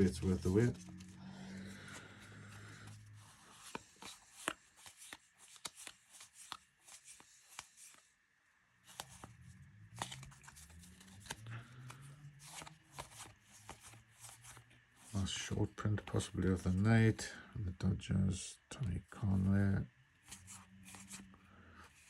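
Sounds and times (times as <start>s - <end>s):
trading cards flicked through: 0.0s - 8.0s, 8.9s - 9.3s, 9.9s - 14.6s.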